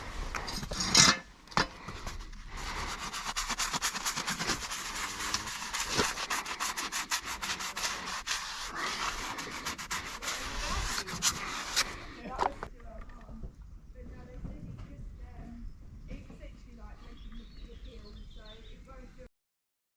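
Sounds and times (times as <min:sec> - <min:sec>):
rasp filing hoof: 0:00.0 - 0:12.3.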